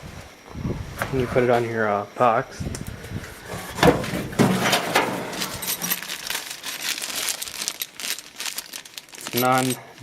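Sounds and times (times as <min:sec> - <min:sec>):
small clicks clinks and rustles: 0:05.4 - 0:09.8.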